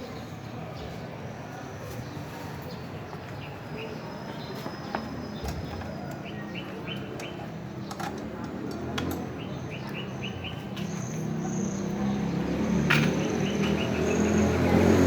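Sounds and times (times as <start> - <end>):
bird chirping: 9.3 - 15.0.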